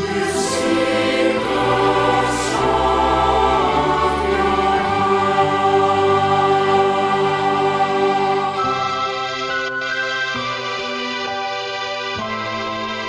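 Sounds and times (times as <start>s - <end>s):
choir singing held chords: 0.0s - 9.7s.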